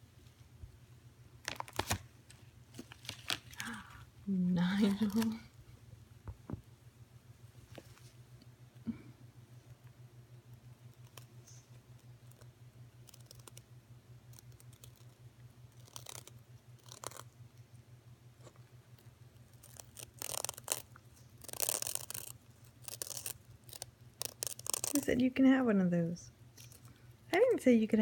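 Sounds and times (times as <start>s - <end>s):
steady low hum: 0.0s - 28.0s
bird crunching snack: 12.2s - 13.6s, 14.3s - 17.3s, 18.9s - 25.1s, 26.5s - 27.0s.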